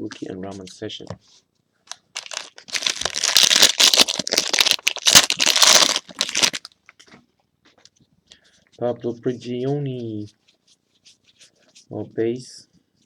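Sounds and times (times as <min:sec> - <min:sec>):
plastic wrapper tearing and crinkling: 0:01.9 - 0:07.0.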